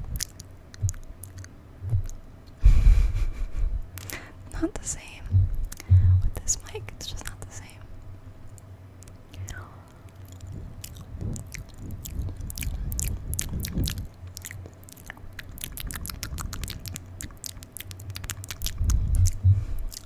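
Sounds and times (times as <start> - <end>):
lip and tongue clicks: 0.0 - 2.2, 3.9 - 4.3, 5.6 - 7.6, 8.5 - 20.0
low thumps on microphone: 5.2 - 6.4, 18.8 - 19.8.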